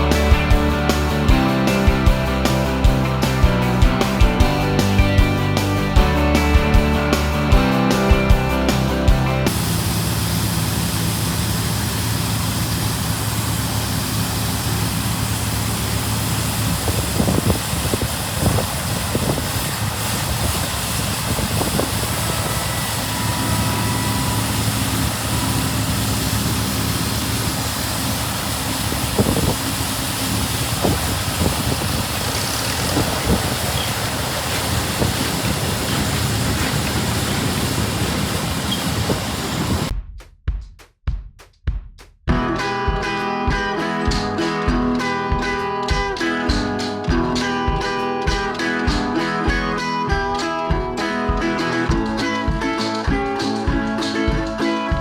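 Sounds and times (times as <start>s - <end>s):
tractor engine running: 0.0s - 39.9s
harvest machinery rattling: 9.4s - 39.9s.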